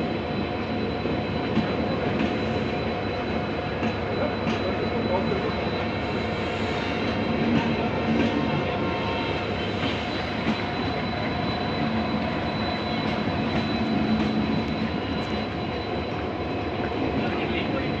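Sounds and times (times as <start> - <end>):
train rumbling on tracks: 0.0 - 18.0.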